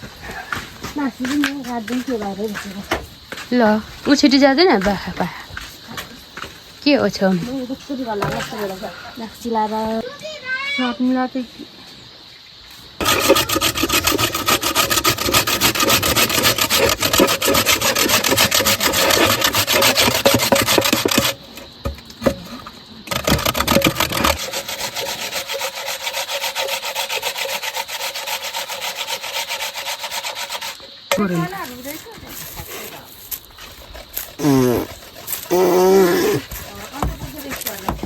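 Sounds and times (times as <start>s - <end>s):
tool strokes against wood: 13.0s - 21.4s, 23.1s - 38.0s.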